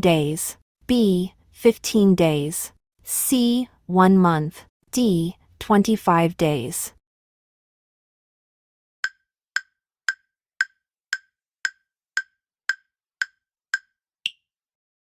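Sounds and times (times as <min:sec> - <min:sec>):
countdown timer ticks: 0:05.0 - 0:06.8, 0:09.0 - 0:14.4.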